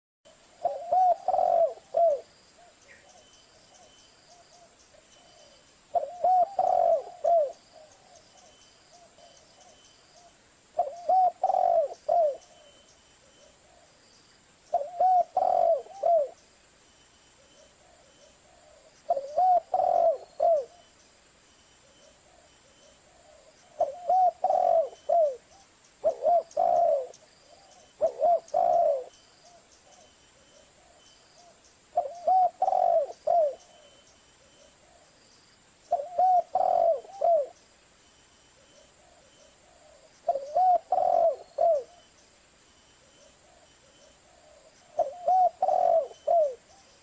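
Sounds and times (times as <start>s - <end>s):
dove cooing: 0.3s - 14.0s, 14.7s - 16.4s, 17.4s - 20.9s, 21.8s - 35.2s, 35.9s - 37.6s, 38.6s - 42.1s, 43.0s - 47.0s.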